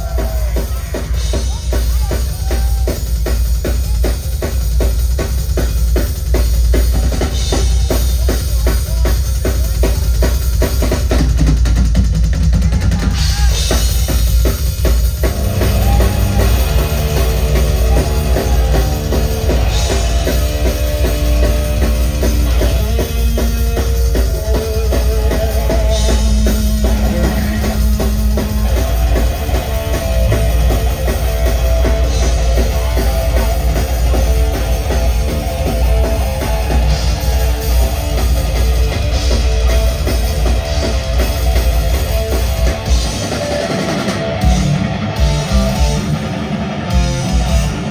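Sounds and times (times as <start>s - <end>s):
pounding drum kit: 0.0s - 47.9s
rock band playing: 0.0s - 47.9s.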